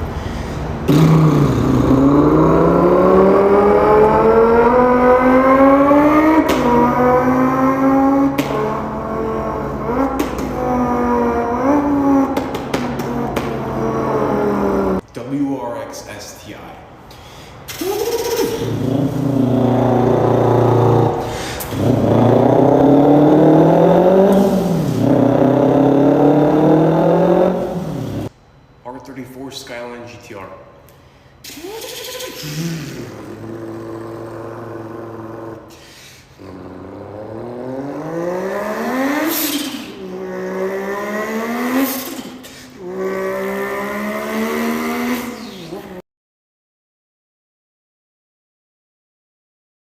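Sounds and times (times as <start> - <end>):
quick breath: 0.0 - 0.8, 17.1 - 17.9, 21.2 - 21.8, 35.7 - 36.4, 42.3 - 42.8
person imitating revving engine: 0.0 - 15.0, 17.7 - 28.3, 31.5 - 46.0.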